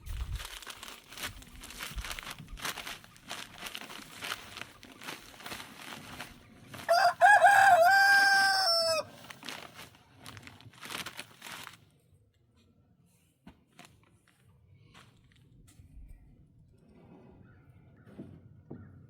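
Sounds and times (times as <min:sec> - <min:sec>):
rustling: 0:00.0 - 0:11.9
rooster crowing: 0:06.9 - 0:09.3.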